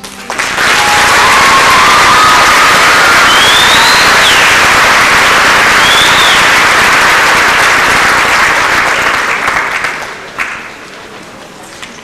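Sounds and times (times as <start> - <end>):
audience applauding: 0.0 - 11.0
rising and falling whistle: 0.8 - 4.6, 5.8 - 6.6.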